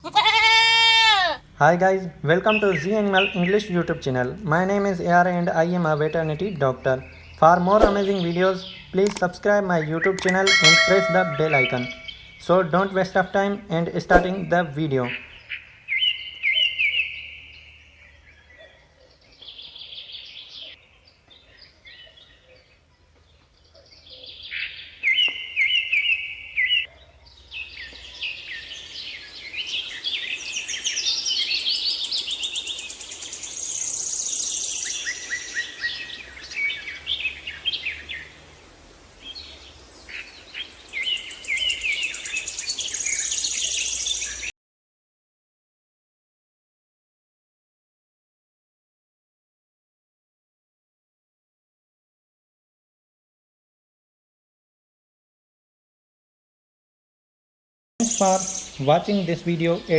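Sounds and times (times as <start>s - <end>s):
birds chirping and calling: 0.0s - 44.5s, 58.0s - 59.9s.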